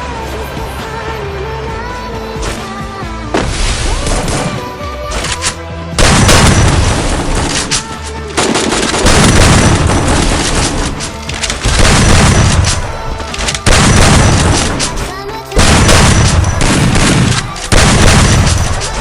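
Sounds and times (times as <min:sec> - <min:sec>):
background music: 0:00.0 - 0:19.0
video game gunfire and booms: 0:06.0 - 0:07.7, 0:08.4 - 0:11.0, 0:11.6 - 0:19.0.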